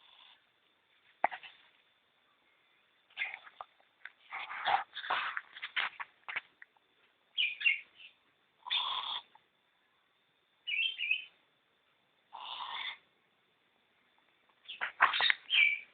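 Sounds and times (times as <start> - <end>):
owl chittering calls: 7.4 - 9.3, 10.7 - 11.3, 12.3 - 13.0, 14.7 - 15.9
owl hissing screeches: 8.6 - 9.2, 12.3 - 13.0.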